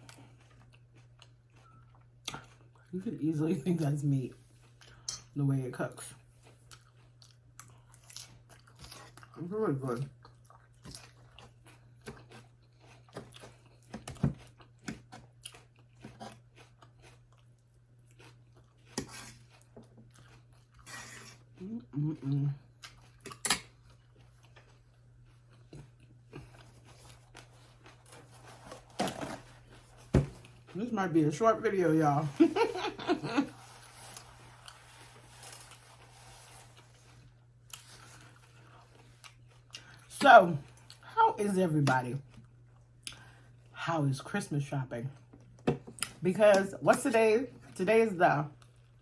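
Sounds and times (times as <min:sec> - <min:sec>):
mouth chewing food: 0:00.0 - 0:03.0, 0:03.7 - 0:28.7
low steady hum: 0:00.0 - 0:49.0.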